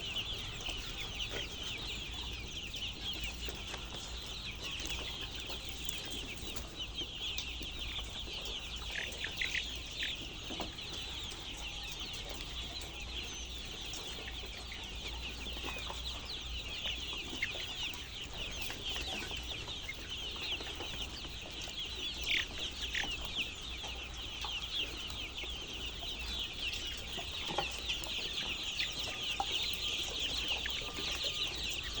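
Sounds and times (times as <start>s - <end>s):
chicks peeping: 0.0s - 32.0s.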